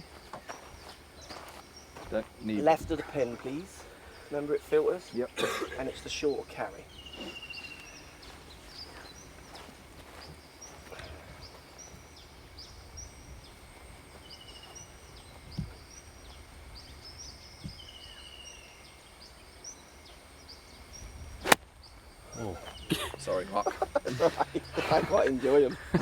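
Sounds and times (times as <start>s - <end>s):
birds chirping: 0.0s - 26.0s
faint high whine: 0.0s - 26.0s
trilled bird calls: 0.0s - 26.0s
golf club striking ball: 21.4s - 21.6s.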